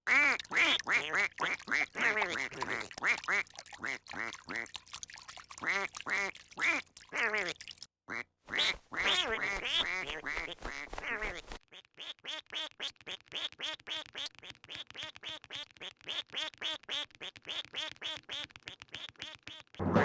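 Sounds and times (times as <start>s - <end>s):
cartoon duck quacking: 0.1s - 2.9s, 6.6s - 14.0s.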